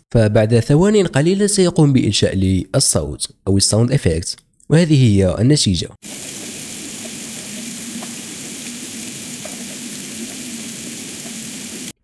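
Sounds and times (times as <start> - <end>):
waterfall rushing water hiss: 6.0 - 12.0.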